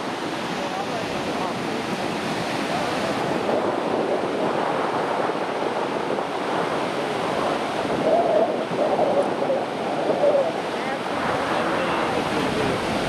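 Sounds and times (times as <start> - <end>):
wind buffeting microphone: 0.0 - 13.0
waterfall rushing water: 10.4 - 13.0.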